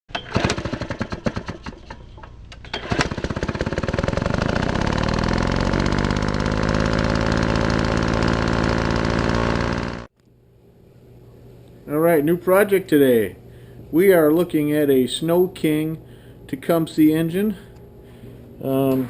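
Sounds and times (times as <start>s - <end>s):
small gasoline engine running: 0.1s - 2.0s, 2.7s - 10.1s.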